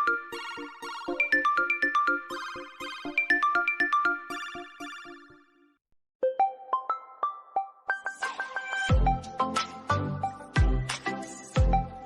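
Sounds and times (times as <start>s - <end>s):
phone ringtone melody: 1.0s - 5.5s, 6.2s - 8.2s.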